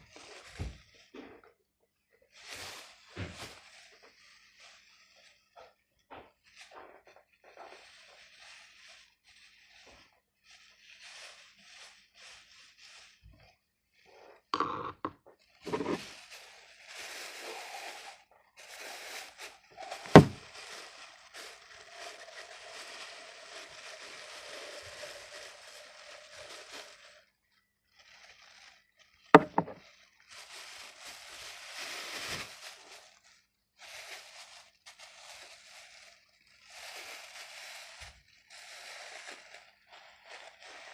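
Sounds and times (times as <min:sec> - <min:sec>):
crackling rustles of craft materials: 0:00.0 - 0:40.9
sharp knocks: 0:20.2 - 0:20.4.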